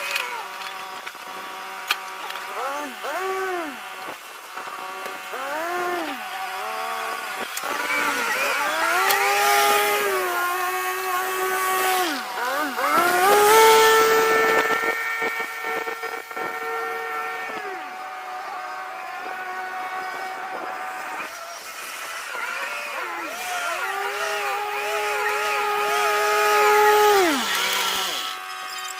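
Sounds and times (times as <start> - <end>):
skid steer engine under load: 0.0 - 28.9.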